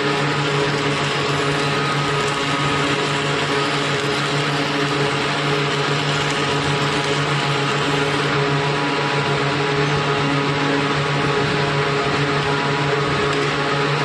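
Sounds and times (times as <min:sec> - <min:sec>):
arc welder hissing: 0:00.0 - 0:08.8.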